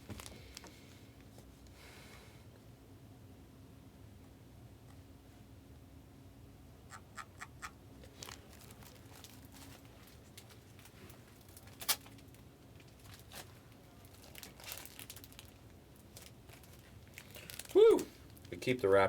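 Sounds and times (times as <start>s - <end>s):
foil wrappers crinkling: 0.0s - 0.8s, 8.0s - 18.8s.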